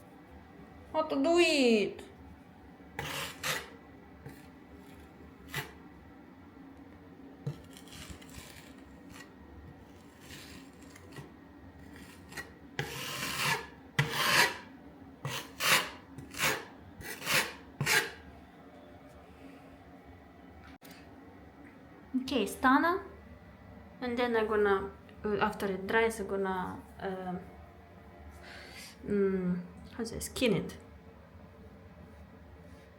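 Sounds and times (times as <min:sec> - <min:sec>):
spatula scraping filler: 0:02.9 - 0:05.9, 0:07.4 - 0:18.3.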